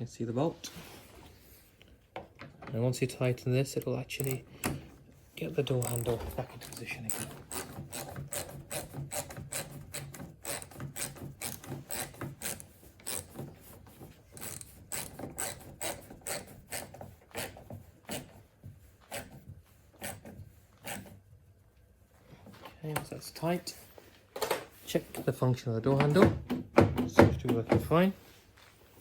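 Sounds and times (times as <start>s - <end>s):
hand ratchet clicking: 3.7s - 4.8s, 5.6s - 13.5s, 14.3s - 18.3s.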